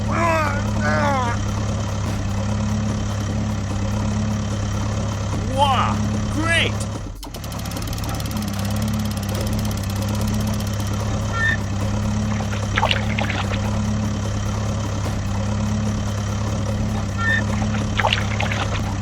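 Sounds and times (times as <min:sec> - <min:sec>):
small tractor engine hum: 0:00.0 - 0:19.0.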